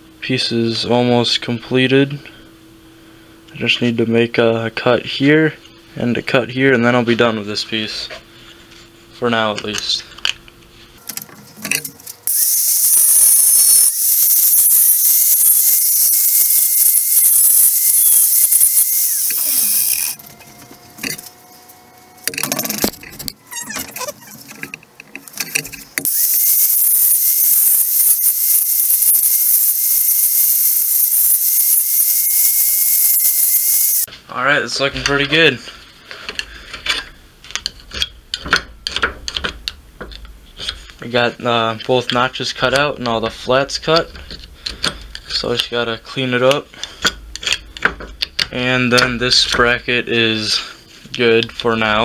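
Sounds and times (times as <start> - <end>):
power cutting tool whining: 12.3 - 21.3, 26.0 - 34.1.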